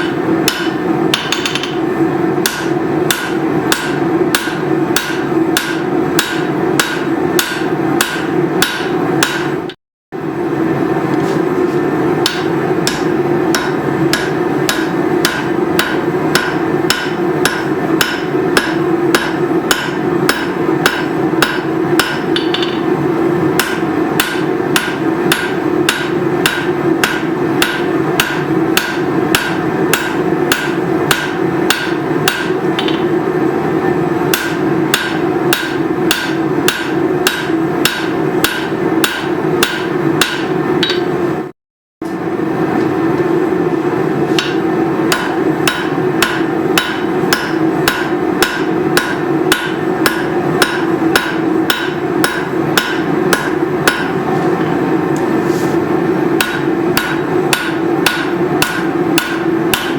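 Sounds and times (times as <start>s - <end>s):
hammer striking steel on anvil: 0.0s - 9.8s, 12.2s - 22.9s, 23.6s - 33.2s, 34.3s - 41.2s, 44.4s - 54.2s, 56.4s - 59.9s.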